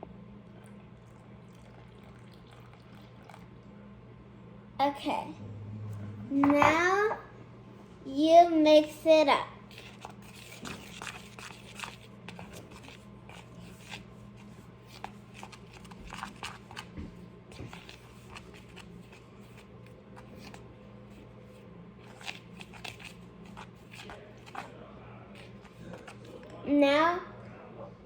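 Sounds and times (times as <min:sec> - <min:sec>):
steady low hum: 0:00.0 - 0:28.0
utensil scraping a bowl: 0:09.7 - 0:16.9.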